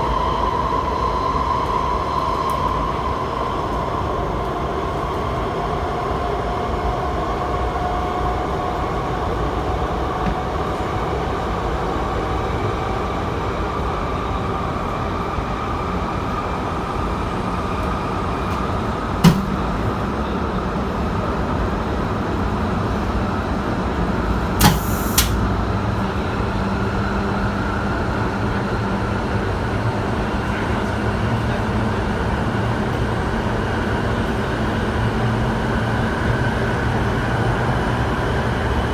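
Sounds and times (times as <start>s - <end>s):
train wheels rumbling on rail: 0.0s - 38.9s
sharp click: 19.2s - 19.7s, 24.6s - 25.4s
short bangs: 19.2s - 20.1s.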